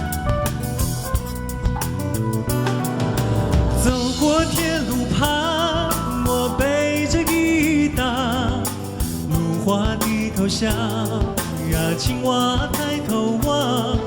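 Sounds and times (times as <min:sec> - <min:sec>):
vibrato melody line: 0:00.0 - 0:08.3
folk-pop song with band: 0:00.0 - 0:14.0.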